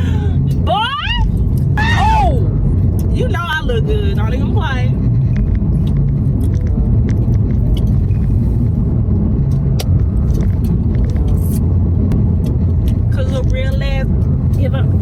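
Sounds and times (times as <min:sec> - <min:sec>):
car road and engine rumble: 0:00.0 - 0:15.0.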